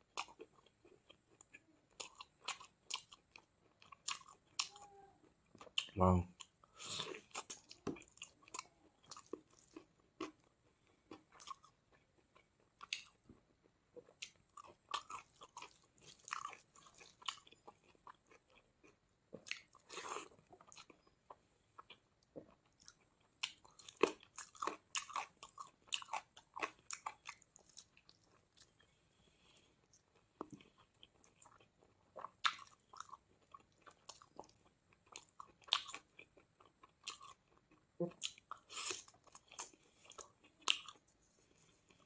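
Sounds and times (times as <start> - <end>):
person chewing food: 0.0 - 42.0.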